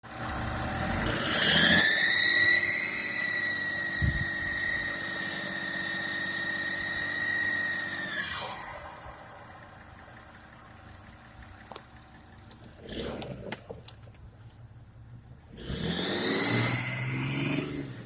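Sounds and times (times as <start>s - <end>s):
diesel engine running: 0.0s - 18.0s
loud high whistle: 1.6s - 8.6s.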